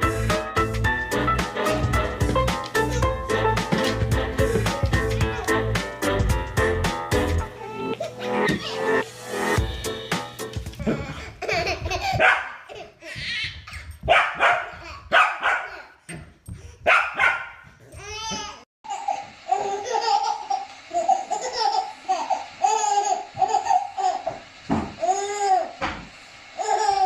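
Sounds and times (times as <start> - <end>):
baby giggling: 10.8 - 13.9, 18.9 - 24.3, 26.6 - 27.0
dog barking: 12.2 - 12.6, 14.1 - 15.8, 16.8 - 17.6.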